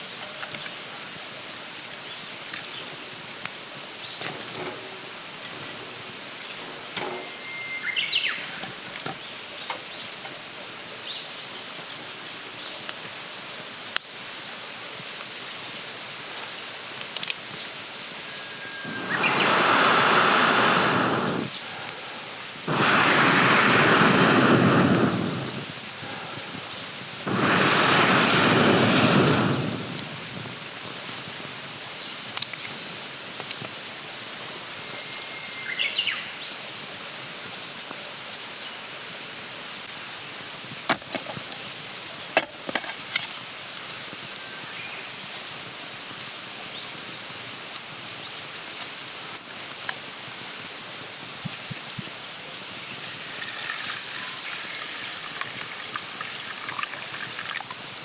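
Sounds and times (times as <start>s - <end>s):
campfire hissing: 0.0s - 58.0s
loud rushing noise: 18.7s - 21.6s, 22.7s - 26.6s, 27.2s - 30.5s
wood crackling and popping: 18.7s - 33.8s, 48.7s - 58.0s.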